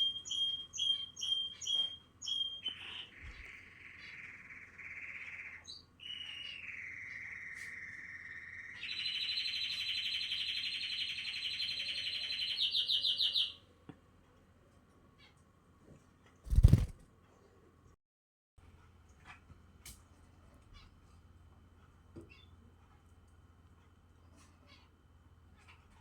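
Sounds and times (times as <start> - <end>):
canary singing trills: 0.0 - 13.7.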